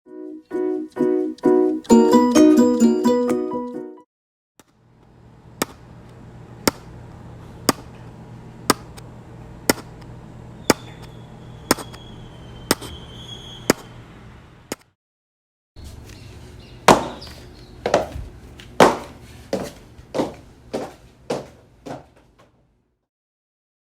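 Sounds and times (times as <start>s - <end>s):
music: 0.1s - 4.1s
steady low hum: 4.7s - 14.7s.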